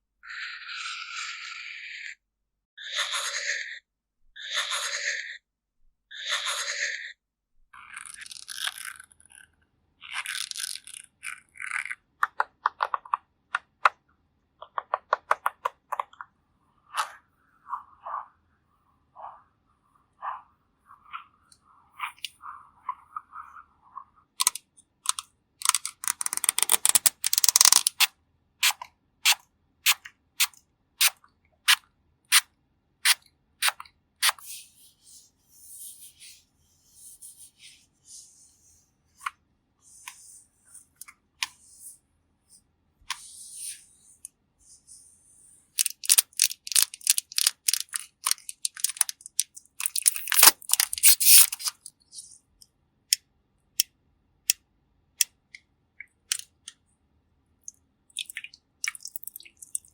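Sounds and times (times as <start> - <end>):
makeup containers clicking: 45.8 - 51.0.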